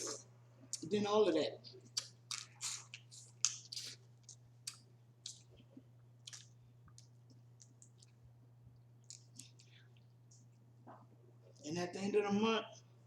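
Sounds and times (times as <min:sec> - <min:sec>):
wet chewing and mouth clicks: 0:01.8 - 0:10.7.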